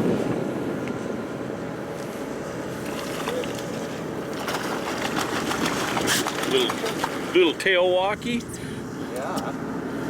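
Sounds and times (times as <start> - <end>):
wind: 0.0 - 10.0
boat engine running: 1.2 - 10.0
water noise: 1.8 - 8.8.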